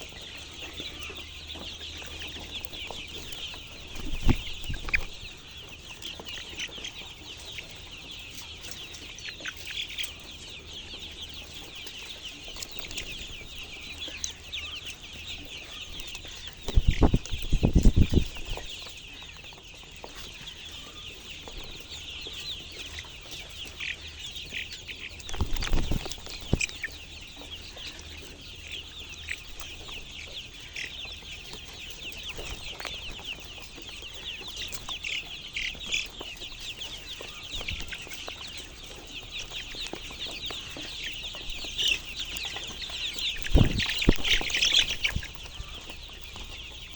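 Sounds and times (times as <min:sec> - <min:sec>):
chickens chirping: 0:00.0 - 0:46.9.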